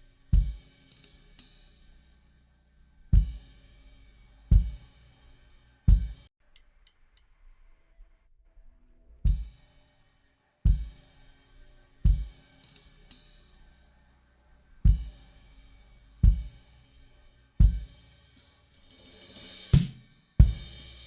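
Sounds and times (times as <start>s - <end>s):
kick drum hits: 3.2s - 3.4s, 4.5s - 4.8s, 5.9s - 6.2s, 9.3s - 9.5s, 12.1s - 12.3s, 14.9s - 15.2s, 16.2s - 16.6s, 17.6s - 17.9s, 19.8s - 20.7s
cymbal crash ringing: 19.0s - 21.0s.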